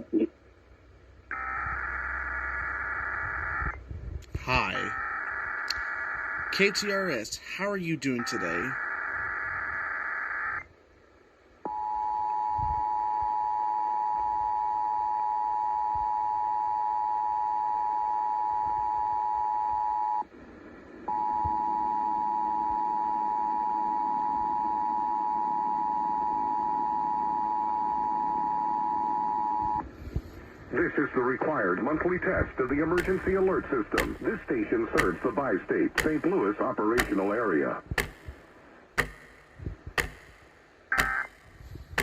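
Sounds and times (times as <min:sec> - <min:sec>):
warbling data burst: 0:32.7 - 0:41.6.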